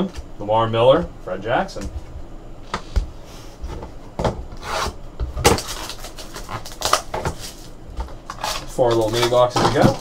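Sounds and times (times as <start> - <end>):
cards and packaging rubbing: 5.6 - 7.7, 8.3 - 10.0.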